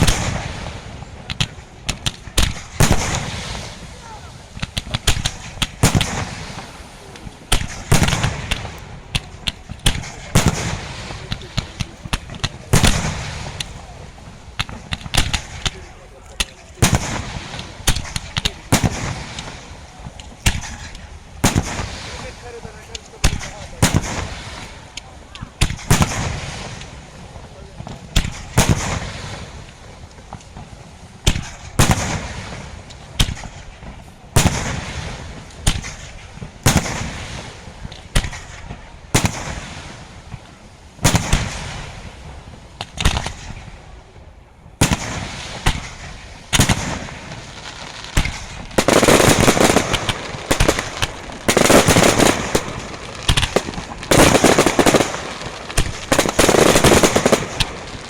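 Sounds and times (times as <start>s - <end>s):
rapid firework crackling: 0.0s - 58.0s
firework shell bursts: 44.8s - 58.0s.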